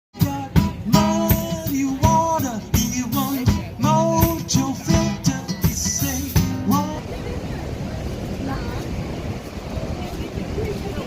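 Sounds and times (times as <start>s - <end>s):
background music with drums: 0.2s - 7.0s.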